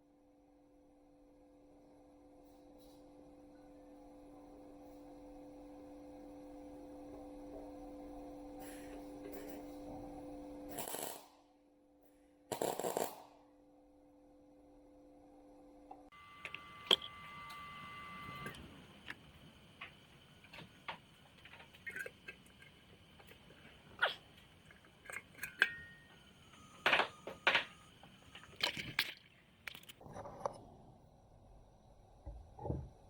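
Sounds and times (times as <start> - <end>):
brief steady tones: 16.1 - 28.9
faint steady hiss: 16.1 - 30.0.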